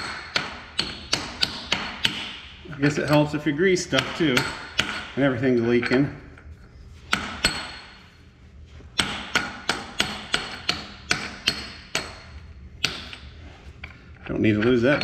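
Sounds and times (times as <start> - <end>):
hammer striking steel: 0.0 - 6.0, 7.1 - 8.0, 9.0 - 13.3.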